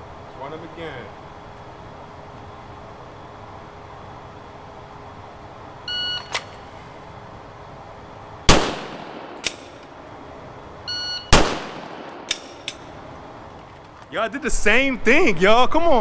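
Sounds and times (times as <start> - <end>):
short electronic beeps: 5.9 - 6.4, 10.9 - 11.3
pistol shots echoing: 8.5 - 9.9, 11.3 - 13.0.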